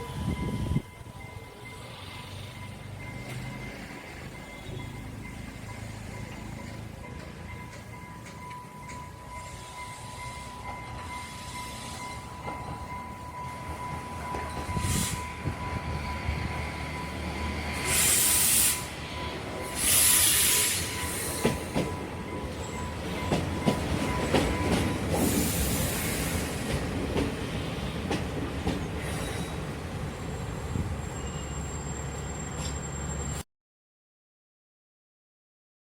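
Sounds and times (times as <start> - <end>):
high-pitched wheel squeal: 30.6 - 33.4.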